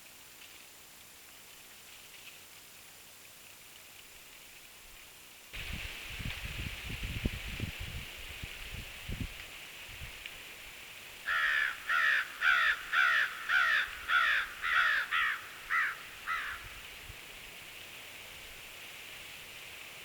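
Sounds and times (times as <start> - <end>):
crow cawing: 11.3 - 16.8.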